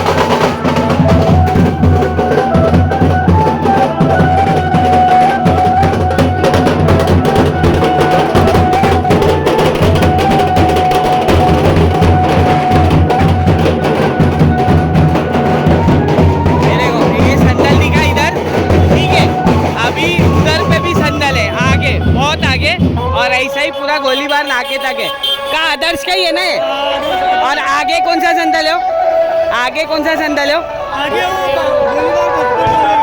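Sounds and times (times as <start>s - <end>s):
loud drum-heavy music with bass: 0.0s - 23.5s.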